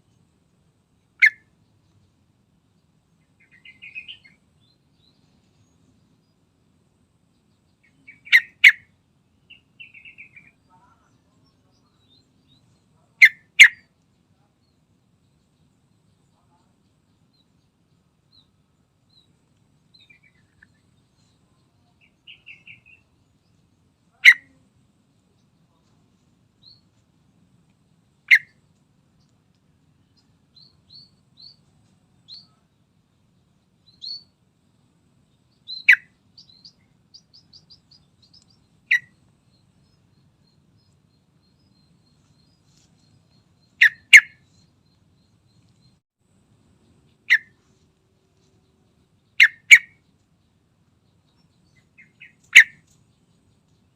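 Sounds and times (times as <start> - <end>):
soft high chirps and trills: 0.0 - 53.9
bulbul sharp loud calls: 1.2 - 1.5, 3.4 - 4.4, 7.8 - 8.9, 9.5 - 11.2, 11.9 - 13.9, 24.1 - 24.6, 28.2 - 28.6, 35.7 - 39.2, 43.7 - 44.6, 47.3 - 47.6, 49.4 - 50.0, 51.7 - 52.9.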